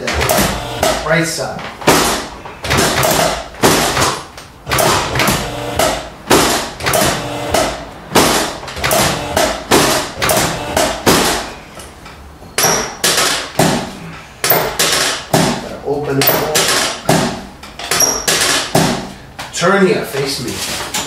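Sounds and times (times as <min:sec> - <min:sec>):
hammer-like knocking strikes: 0:01.9 - 0:11.4, 0:12.6 - 0:15.6, 0:16.2 - 0:19.1.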